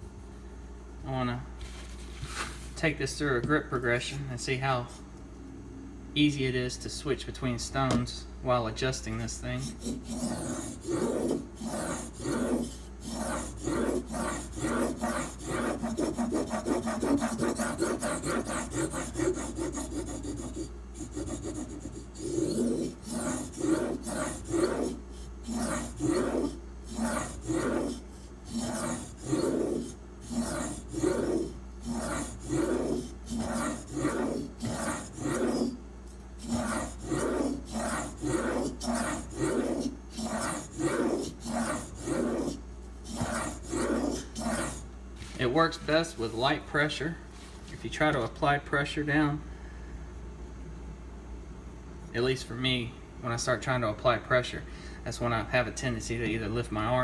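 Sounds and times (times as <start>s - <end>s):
knife scraping on sharpening stone: 9.6s - 35.8s, 36.4s - 44.8s.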